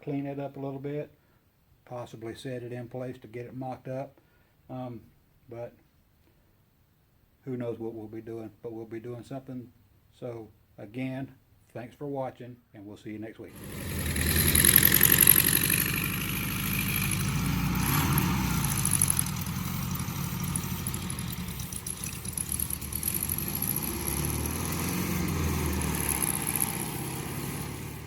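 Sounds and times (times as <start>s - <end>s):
engine rumbling: 13.5s - 28.0s.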